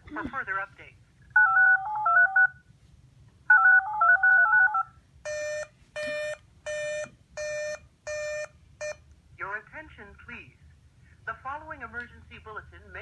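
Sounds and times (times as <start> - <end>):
touch-tone tone pairs: 3.5 - 9.0
buzzy beeps: 4.5 - 9.0.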